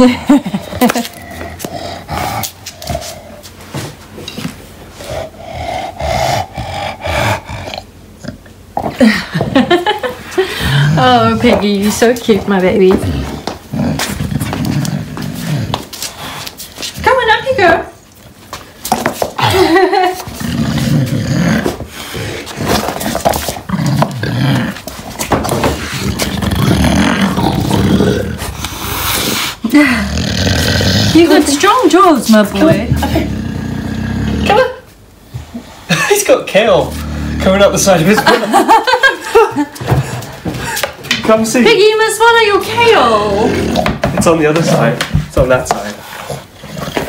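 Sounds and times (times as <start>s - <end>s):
dog grunting and growling: 0.0s - 3.5s, 4.9s - 9.8s, 10.4s - 16.5s, 19.4s - 35.7s, 36.6s - 40.9s, 42.8s - 44.2s, 45.9s - 47.0s
dog chewing ball: 0.8s - 9.8s, 10.6s - 17.0s, 18.1s - 29.6s, 43.2s - 47.0s.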